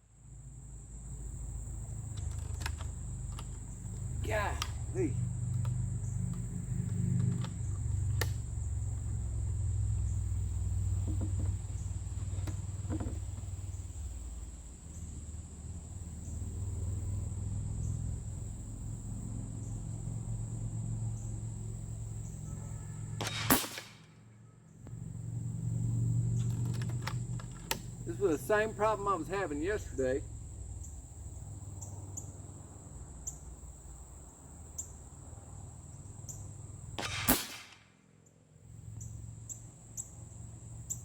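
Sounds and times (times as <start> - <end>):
high insect drone: 0.0 - 37.4, 38.2 - 41.0
air rifle shot: 23.2 - 24.1, 37.0 - 38.0.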